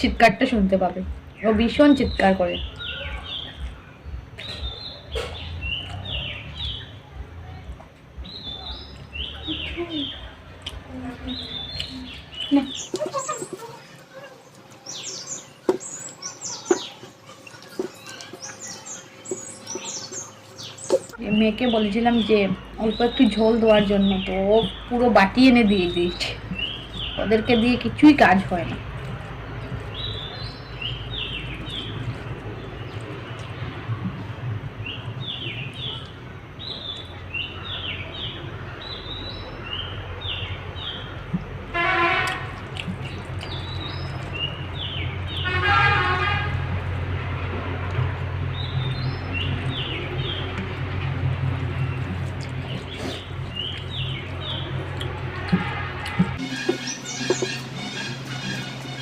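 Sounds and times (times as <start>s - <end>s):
small birds chirping: 0.0s - 59.0s
steady low hum: 0.0s - 59.0s
horn tooting: 41.7s - 42.8s, 45.3s - 47.5s, 55.4s - 59.0s.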